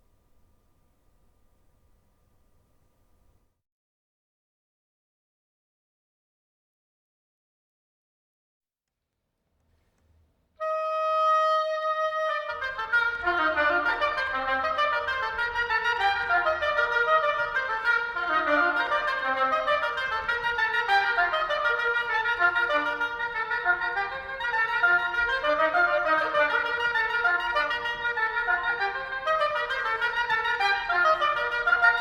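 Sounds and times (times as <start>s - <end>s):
clarinet ensemble playing fiddle tune: 10.7s - 32.0s.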